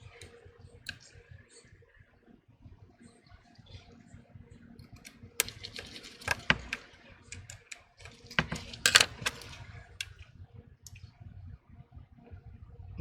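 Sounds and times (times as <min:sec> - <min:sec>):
small tools clicking: 0:05.0 - 0:10.2.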